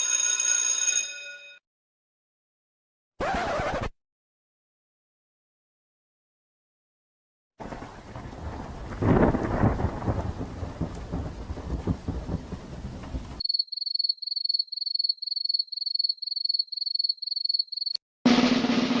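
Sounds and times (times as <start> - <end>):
rain: 7.6 - 13.4
rumbling thunder: 7.6 - 13.4.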